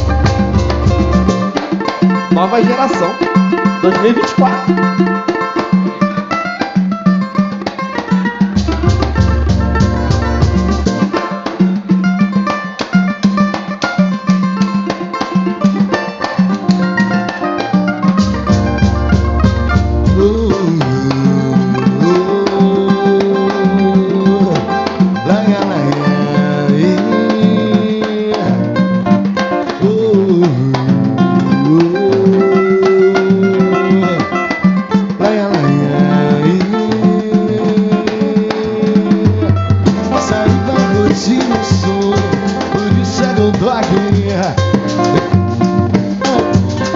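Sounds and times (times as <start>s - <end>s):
deep bass notes: 0.0s - 1.5s, 8.5s - 11.1s, 18.2s - 22.8s
sliding melody line: 0.0s - 7.4s, 8.1s - 12.4s, 13.0s - 46.9s
percussion rhythm: 0.0s - 46.9s
plucked strings strumming: 0.0s - 46.9s.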